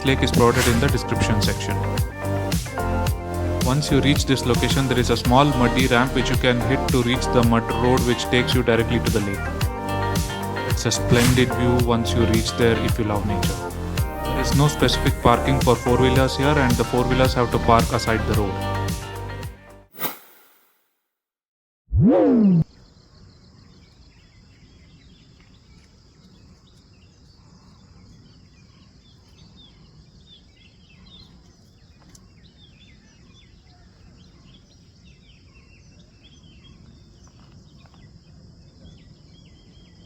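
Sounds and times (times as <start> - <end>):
birds chirping: 0.0 - 18.8, 22.5 - 40.0
loud pitch-sliding tone: 21.9 - 22.7.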